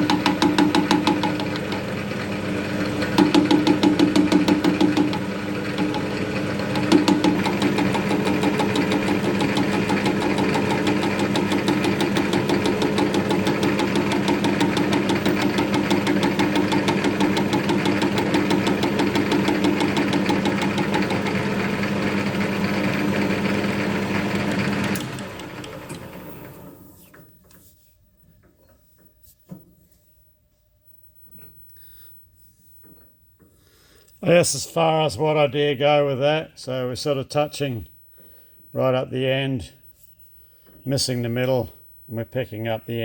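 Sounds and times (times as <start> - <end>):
lathe tool ticking: 0.0 - 26.2
metal lathe running: 0.0 - 26.7
lathe spinning down: 0.0 - 26.9.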